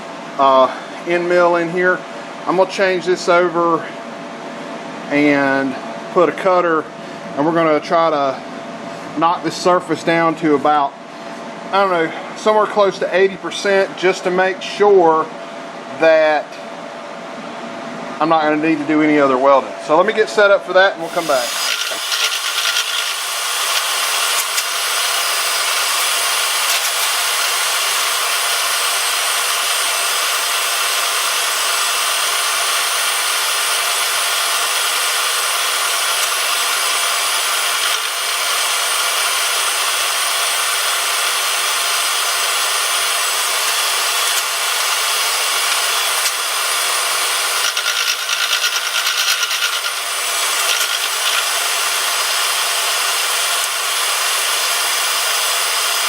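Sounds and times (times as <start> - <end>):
milling machine cutting metal: 21.0 - 56.0.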